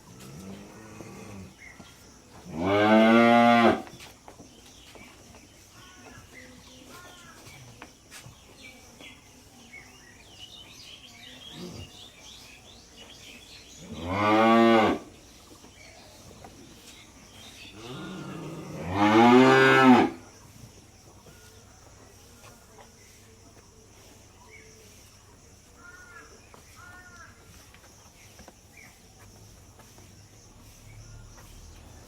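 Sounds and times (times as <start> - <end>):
cow mooing: 2.6 - 3.8, 17.8 - 20.2.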